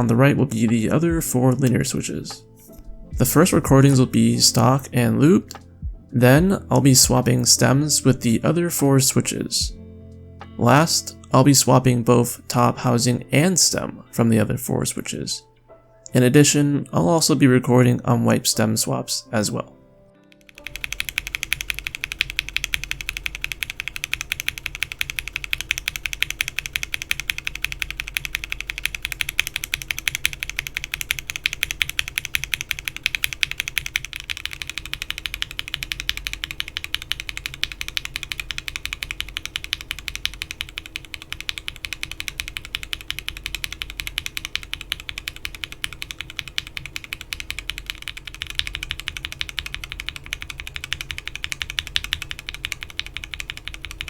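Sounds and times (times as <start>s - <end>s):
fast typing on mechanical keyboard: 20.4s - 54.0s.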